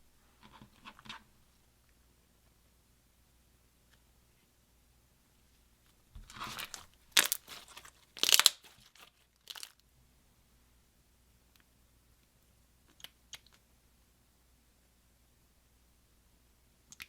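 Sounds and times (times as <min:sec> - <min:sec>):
makeup being crushed: 0:06.3 - 0:09.8.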